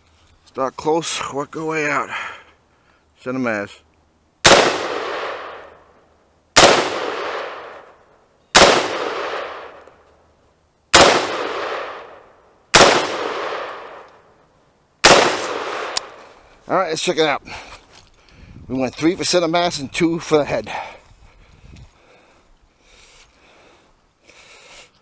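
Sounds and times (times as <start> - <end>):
rifle shots with echo: 4.4 - 5.8, 6.6 - 8.0, 8.6 - 9.9, 10.9 - 14.1, 15.0 - 16.2.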